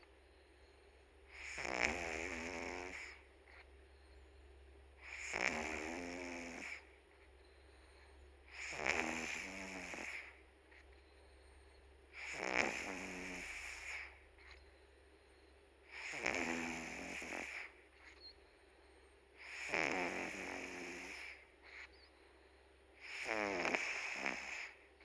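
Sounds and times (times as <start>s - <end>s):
quiet cat breaths: 0.0s - 25.0s
cat snoring: 1.3s - 3.7s, 5.0s - 10.8s, 12.1s - 14.6s, 15.9s - 18.3s, 19.4s - 22.0s, 23.0s - 24.8s.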